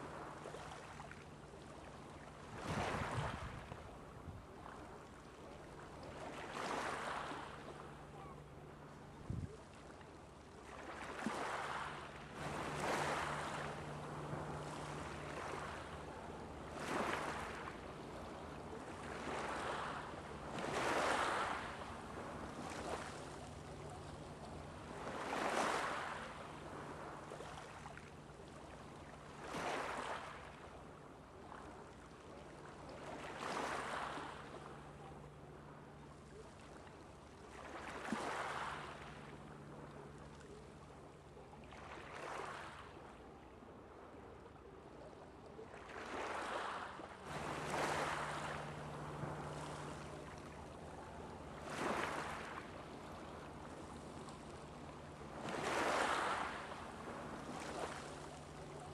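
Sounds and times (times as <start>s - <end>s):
steady low hum: 0.0s - 29.5s, 46.8s - 58.9s
small waves breaking on shore: 0.0s - 58.9s.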